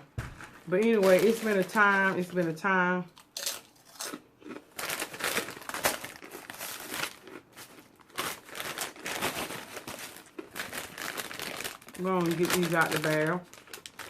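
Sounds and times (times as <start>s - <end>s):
packaging crinkling and rustling: 0.2s - 2.6s, 4.7s - 14.0s
packaging tearing: 4.8s - 14.0s.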